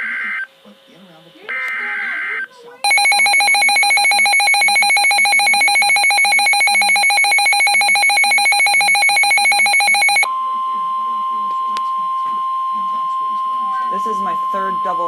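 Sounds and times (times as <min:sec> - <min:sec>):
steady warning alert tone: 0:01.5 - 0:10.3
rapid trilling electronic alarm: 0:01.5 - 0:11.4, 0:12.4 - 0:15.0.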